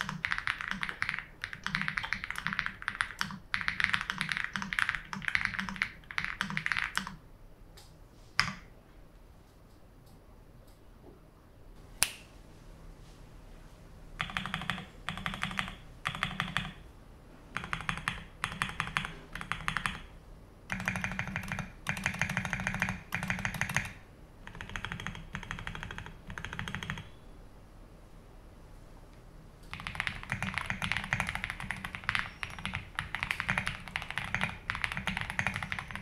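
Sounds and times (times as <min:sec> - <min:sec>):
typing on mechanical keyboard: 0:00.0 - 0:07.2, 0:14.2 - 0:16.8, 0:17.5 - 0:20.1, 0:20.7 - 0:27.1, 0:29.7 - 0:36.0.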